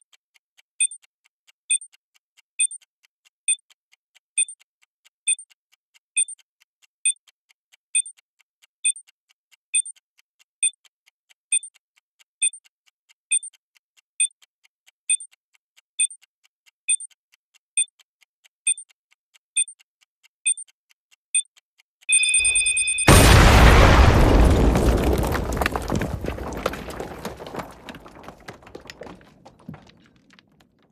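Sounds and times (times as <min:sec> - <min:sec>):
short high electronic beeps: 0:22.1 - 0:23.1.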